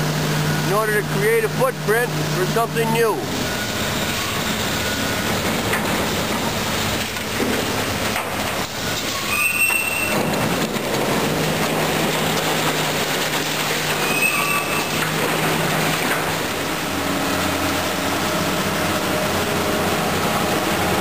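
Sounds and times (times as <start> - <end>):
machine engine humming: 0.0 - 21.0
grinding and clattering debris: 5.1 - 17.9
high metal squeal: 8.9 - 10.5, 13.9 - 15.2.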